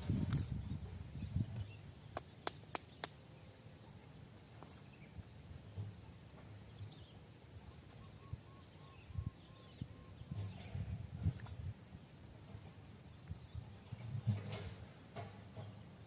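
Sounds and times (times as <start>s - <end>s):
sharp clicks: 2.1s - 3.6s
faint insect chirping: 3.6s - 13.8s.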